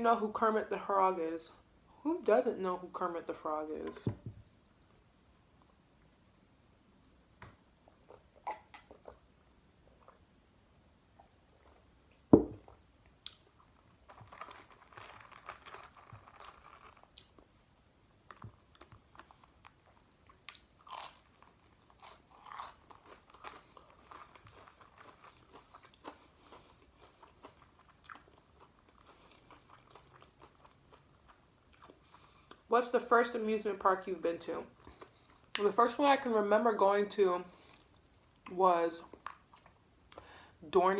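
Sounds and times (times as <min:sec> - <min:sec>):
chewing and crunching food: 0:07.8 - 0:10.3, 0:11.2 - 0:32.7, 0:34.6 - 0:35.7, 0:37.6 - 0:40.3
loud thump: 0:12.4 - 0:12.6.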